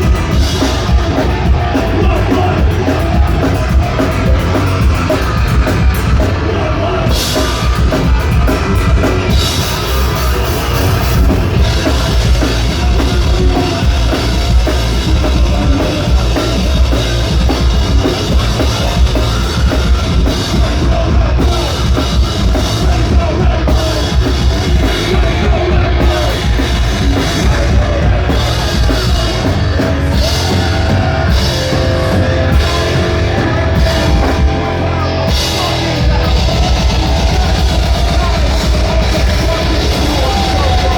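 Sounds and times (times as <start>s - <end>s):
drum kit: 0.0s - 40.9s
heavy metal band playing live: 0.0s - 40.9s.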